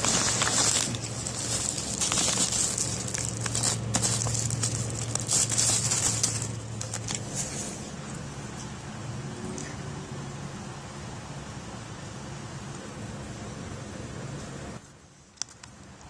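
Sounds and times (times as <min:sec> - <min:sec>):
crinkling and rustling: 0:00.0 - 0:08.7
steady low hum: 0:00.0 - 0:16.0
small irregular clicks: 0:15.3 - 0:16.0.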